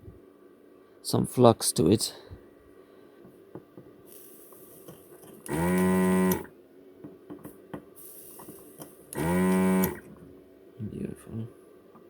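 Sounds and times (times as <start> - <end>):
desoldering vacuum pump buzzing: 4.2 - 6.6, 8.1 - 10.2.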